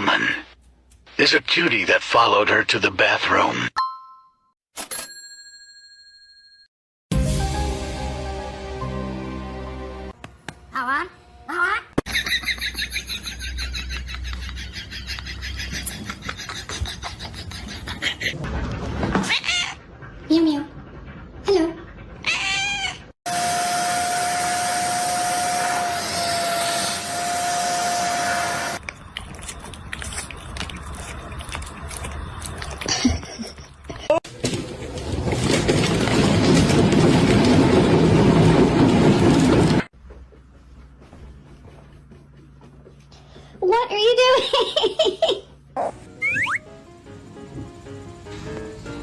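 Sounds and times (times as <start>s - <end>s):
appliance motor and fan whining: 23.3s - 29.2s.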